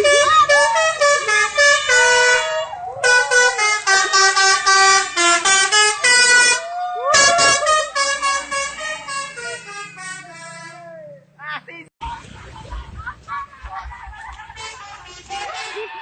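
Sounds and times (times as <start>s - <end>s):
musical bus horn playing a tune: 0.0s - 11.0s, 14.5s - 16.0s.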